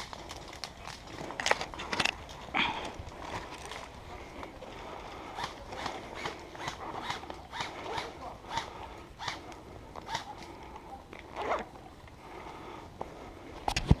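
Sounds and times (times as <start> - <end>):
clothing and gear rustling: 0.0 - 4.7.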